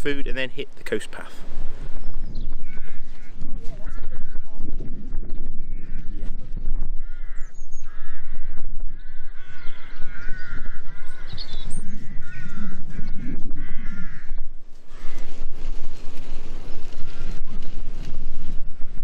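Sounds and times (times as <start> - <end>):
birds cawing harshly: 1.2 - 4.7, 5.6 - 6.2, 6.8 - 17.6.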